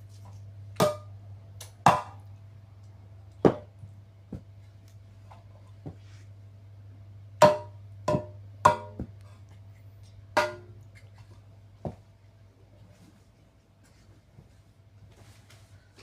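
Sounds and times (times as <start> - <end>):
sharp knocks on coffee maker: 7.4 - 9.1.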